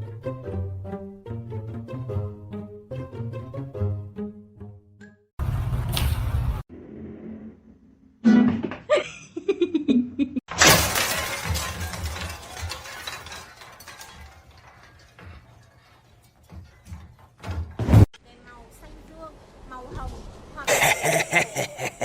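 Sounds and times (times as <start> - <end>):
crash of something shattering: 10.5 - 16.7.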